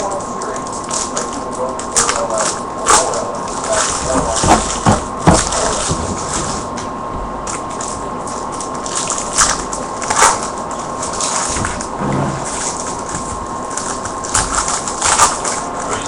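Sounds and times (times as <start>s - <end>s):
faint steady whine: 0.0s - 16.0s
packaging crinkling and rustling: 0.0s - 16.0s.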